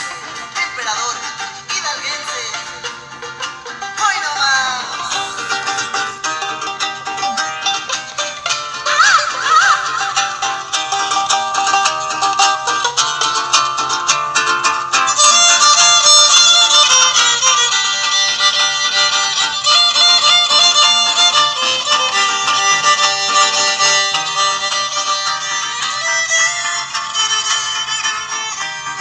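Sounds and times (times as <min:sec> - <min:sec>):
plucked strings: 0:00.0 - 0:29.0
violins playing: 0:04.6 - 0:11.2, 0:15.1 - 0:29.0.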